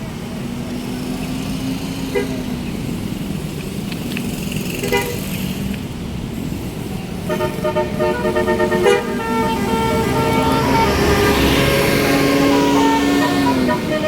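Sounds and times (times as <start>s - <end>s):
bus engine rumbling: 0.0s - 14.0s
bus musical horn tune: 7.2s - 14.0s.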